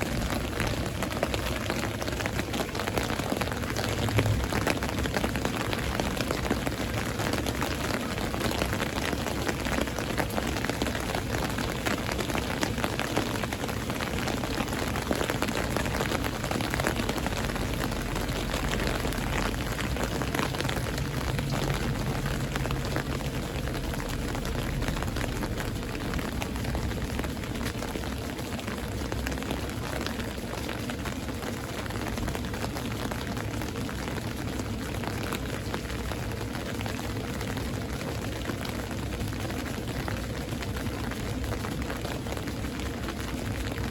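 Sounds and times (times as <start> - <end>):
heavy rain pouring: 0.0 - 43.9
low thunder rumble: 2.8 - 7.4, 15.6 - 28.0.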